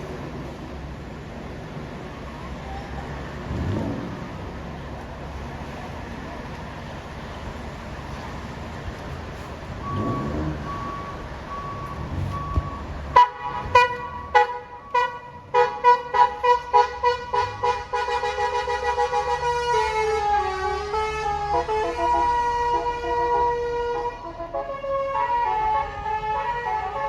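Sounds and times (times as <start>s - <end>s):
bus engine rumble: 0.0s - 27.0s
multi-tone bus horn tune: 13.1s - 27.0s.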